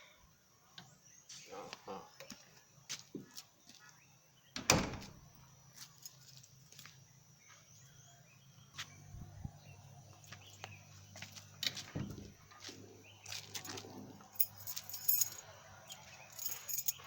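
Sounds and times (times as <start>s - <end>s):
door lock clicks: 4.6s - 5.2s.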